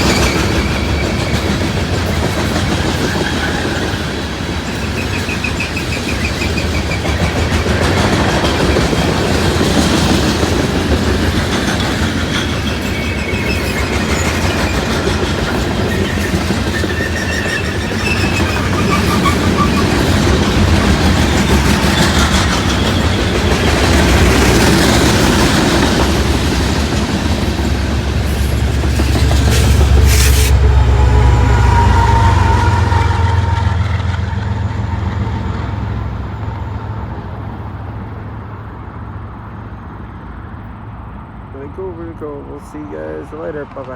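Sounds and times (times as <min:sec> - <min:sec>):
wheel squeal: 0:00.0 - 0:04.2, 0:12.0 - 0:23.7, 0:28.3 - 0:36.6
wheels clicking over rail joints: 0:00.0 - 0:30.3
train cars rolling past: 0:00.0 - 0:43.9.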